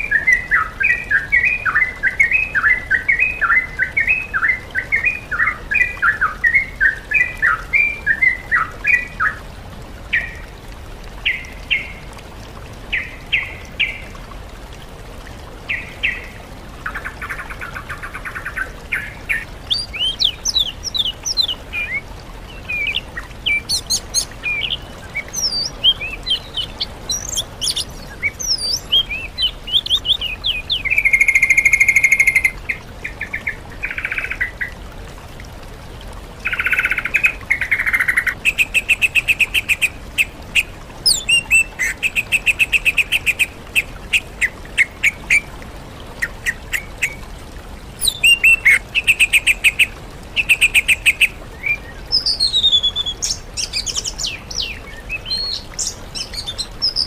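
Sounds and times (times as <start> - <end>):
birds chirping and whistling: 22.7 - 32.5, 48.0 - 48.8
buzzy bird trill: 26.4 - 28.8.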